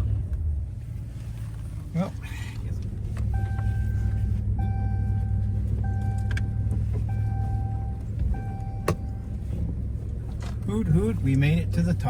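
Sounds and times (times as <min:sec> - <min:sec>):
truck engine rumbling: 0:00.0 - 0:12.0
vehicle warning chime: 0:03.3 - 0:09.4.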